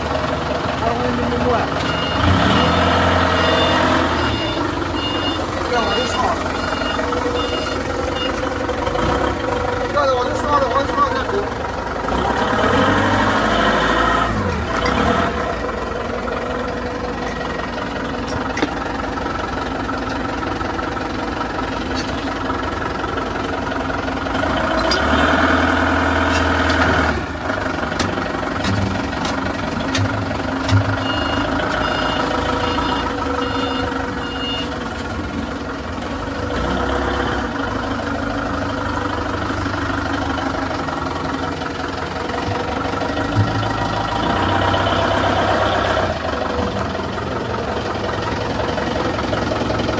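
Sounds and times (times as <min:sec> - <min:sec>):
diesel engine running: 0:00.0 - 0:49.9
reversing alarm beeps: 0:01.8 - 0:08.4, 0:30.9 - 0:34.7.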